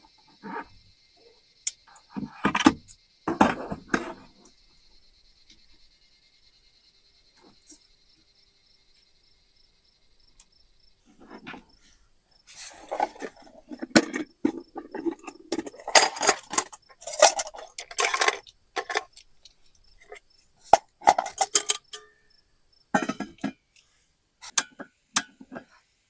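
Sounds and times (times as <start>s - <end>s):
insects chirping: 0.0s - 26.0s
metal cookware clinking: 12.9s - 19.2s, 19.9s - 22.2s, 23.0s - 23.6s.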